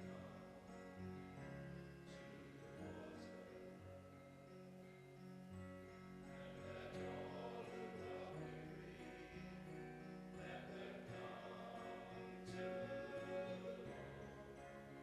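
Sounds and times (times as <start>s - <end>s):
singing with instruments: 6.3s - 15.0s.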